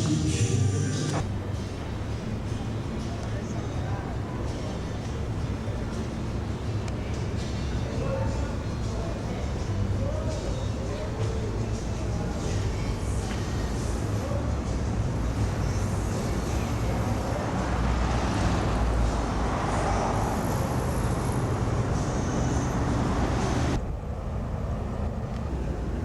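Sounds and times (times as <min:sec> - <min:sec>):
road traffic rumble: 0:00.0 - 0:26.0.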